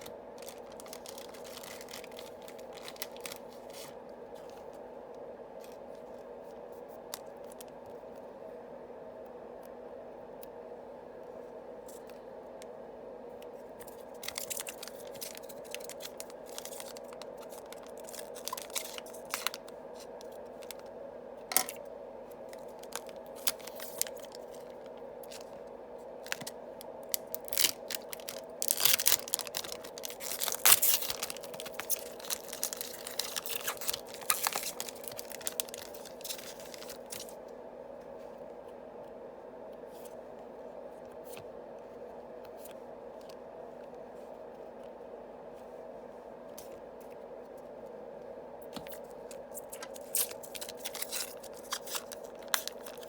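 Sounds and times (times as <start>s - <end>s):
wrappers crinkling and tearing: 0.0s - 4.6s, 13.8s - 20.9s, 22.5s - 25.6s, 26.2s - 37.4s, 48.8s - 53.0s
steady low hum: 0.0s - 53.0s
cards being handled: 27.2s - 37.4s, 48.8s - 53.0s.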